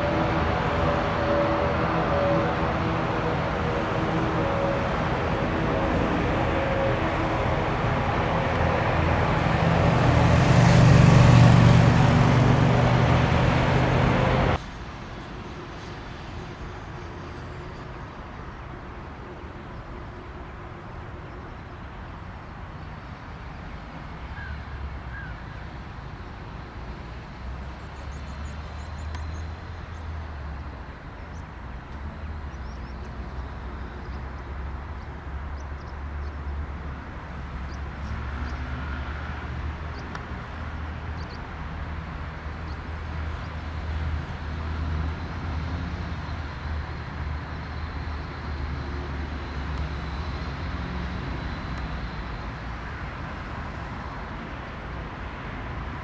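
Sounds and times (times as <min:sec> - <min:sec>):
low jet rumble: 0:00.0 - 0:14.6.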